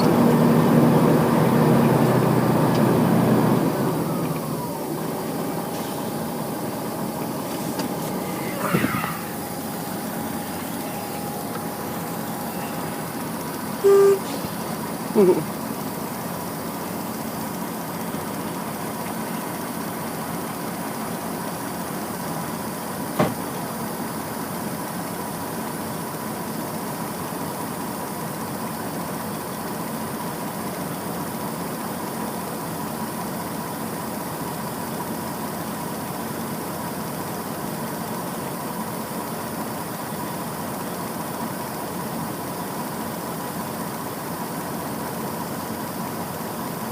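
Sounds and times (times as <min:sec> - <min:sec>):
thin steady whine: 0:00.0 - 0:25.5
harvesting machine engine drone: 0:00.0 - 0:46.9
short loud horn tones: 0:07.3 - 0:14.8.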